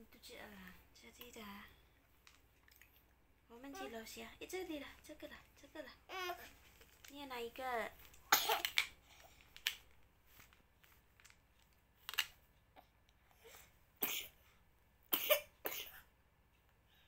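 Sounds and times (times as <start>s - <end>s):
child coughing: 8.3s - 8.8s, 14.0s - 14.4s, 15.2s - 16.0s.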